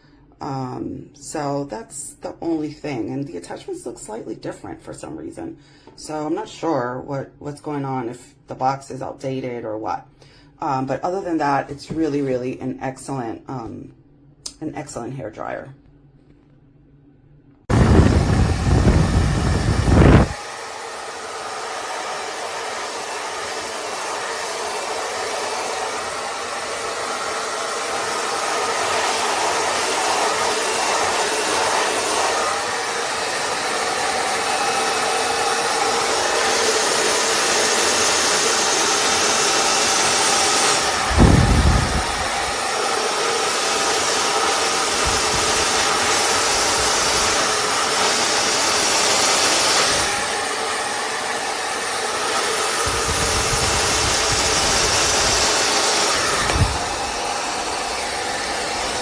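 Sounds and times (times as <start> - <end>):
hair dryer running: 17.7 - 59.0
low thump: 56.4 - 56.9.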